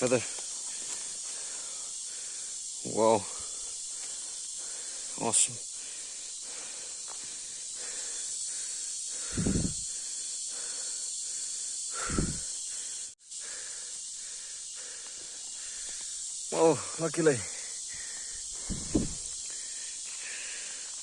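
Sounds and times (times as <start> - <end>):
steady high hiss: 0.0 - 21.0
person exhaling breathily: 5.8 - 15.8, 17.5 - 21.0.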